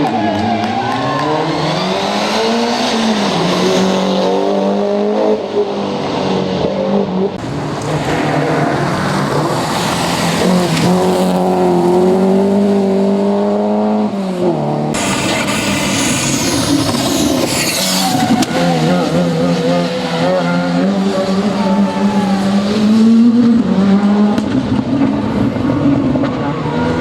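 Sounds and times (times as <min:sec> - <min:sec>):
rally car engines revving: 0:00.0 - 0:27.0.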